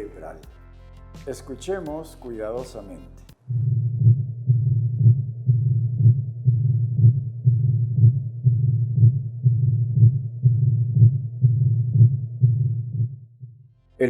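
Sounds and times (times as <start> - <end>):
heartbeat through stethoscope: 3.3 - 13.7
low rumbling heart murmur: 3.5 - 13.6.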